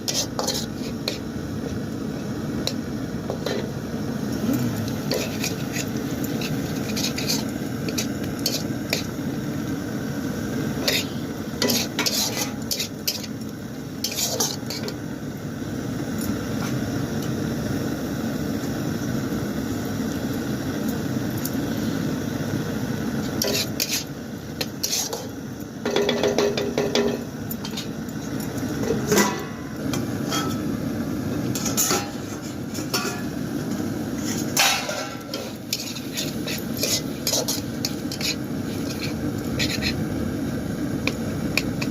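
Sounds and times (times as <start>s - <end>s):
metal spoon scraping a pan: 0.0s - 1.3s, 2.6s - 3.7s, 4.8s - 9.3s, 10.8s - 15.0s, 23.3s - 30.7s, 31.4s - 40.1s
food sizzling: 0.0s - 41.9s.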